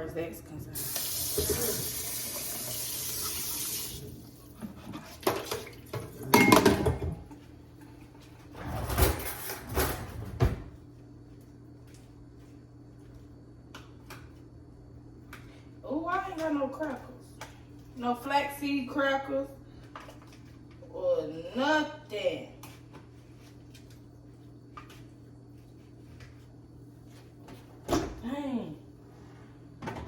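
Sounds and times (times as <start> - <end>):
kitchen tap running: 0.8 - 6.2
dishes knocking and clattering: 4.6 - 7.4.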